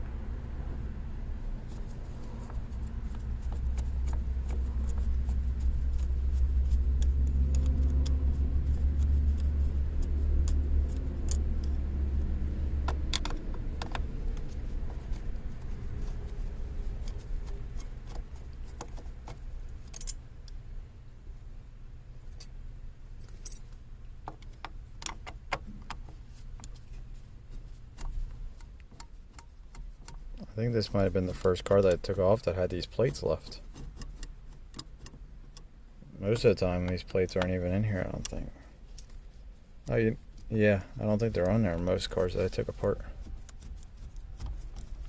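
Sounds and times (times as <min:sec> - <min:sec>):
vehicle engine rumble: 0:00.0 - 0:45.0
small metallic clicks: 0:01.7 - 0:20.6, 0:23.2 - 0:32.2, 0:32.8 - 0:39.2.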